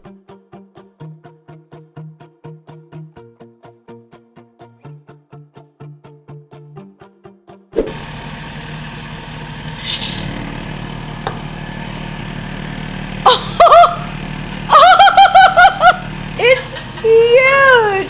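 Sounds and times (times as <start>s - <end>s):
cotton candy machine humming: 7.8s - 18.0s
brief hiss: 9.6s - 12.8s
person squealing: 13.3s - 14.1s.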